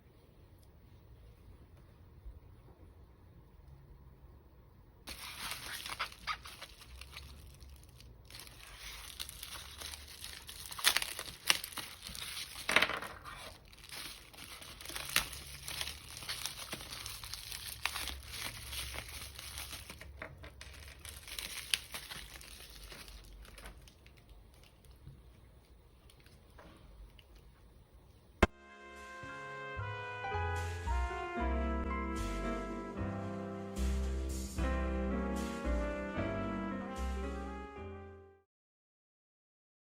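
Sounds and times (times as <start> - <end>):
packaging crinkling: 5.1 - 27.6.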